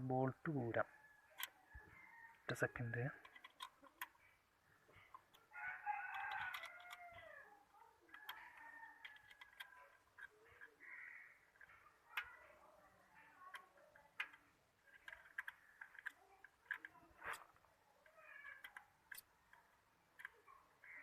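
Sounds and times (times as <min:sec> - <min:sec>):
faint clicks: 0:13.2 - 0:20.5.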